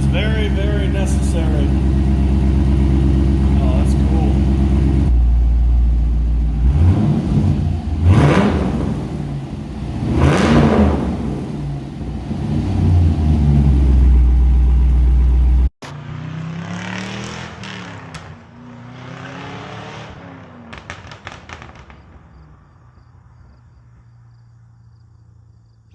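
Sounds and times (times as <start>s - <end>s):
quieter engine sound: 0.0s - 15.7s
car engine revving and idling: 0.0s - 22.5s.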